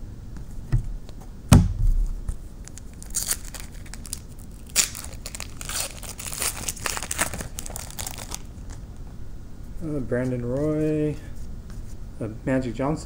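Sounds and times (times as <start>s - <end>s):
thump: 1.5s - 2.0s
foil wrapper crinkling and tearing: 2.6s - 8.8s.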